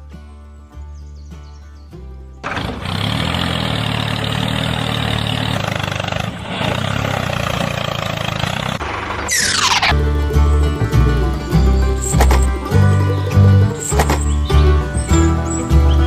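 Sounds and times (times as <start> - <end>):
motor running: 2.5 - 13.2.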